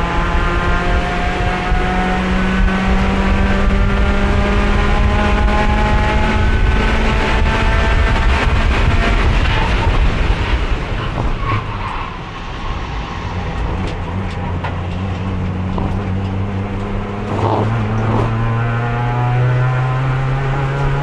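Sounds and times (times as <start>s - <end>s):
racing car engine: 0.0s - 21.0s.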